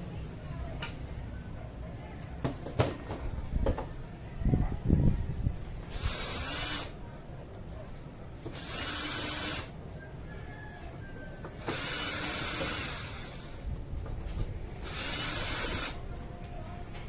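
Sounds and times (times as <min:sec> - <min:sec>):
high hissing workshop tool: 0:05.9 - 0:06.9, 0:08.5 - 0:09.8, 0:11.6 - 0:13.6, 0:14.8 - 0:16.0.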